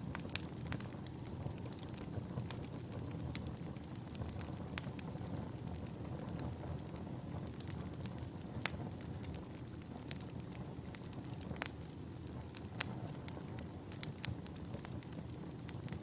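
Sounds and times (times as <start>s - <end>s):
wood fire crackling and popping: 0.0s - 16.0s.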